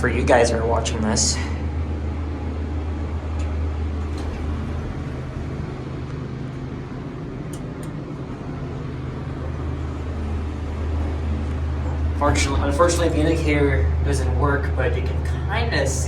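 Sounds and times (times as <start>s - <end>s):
ventilation fan whirring hum: 0.0s - 16.0s
low drone: 1.2s - 16.0s.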